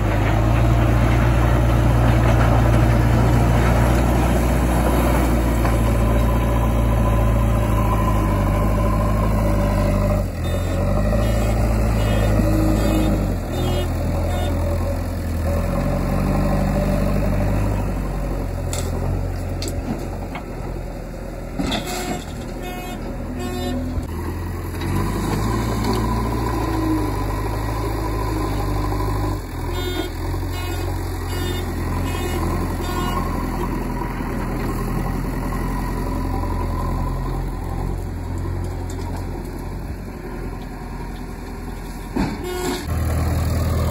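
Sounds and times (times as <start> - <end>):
backhoe diesel engine running: 0.0 - 43.9.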